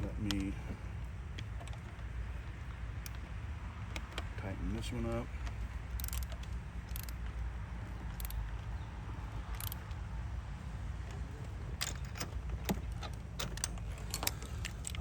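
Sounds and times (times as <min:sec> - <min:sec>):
hand tools clicking on metal: 0:05.0 - 0:08.8, 0:09.4 - 0:10.1, 0:11.0 - 0:15.0.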